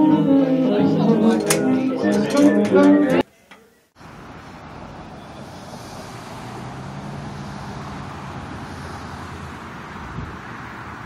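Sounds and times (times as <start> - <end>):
vehicle engine hum: 4.0 - 11.0.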